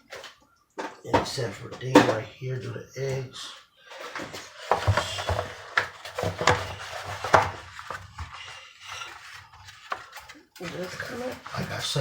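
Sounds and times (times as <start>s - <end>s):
kitchen items clattering: 0.0s - 12.0s
rustling: 3.8s - 12.0s.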